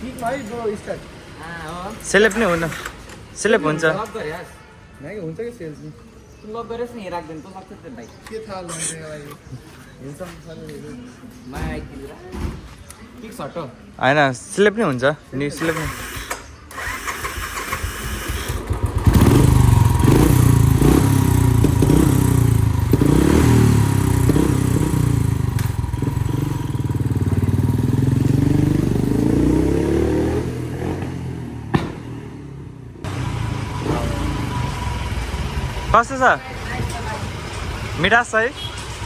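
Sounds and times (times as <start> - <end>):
motorcycle engine revving: 15.6 - 39.0
exhaust pops: 30.8 - 32.4.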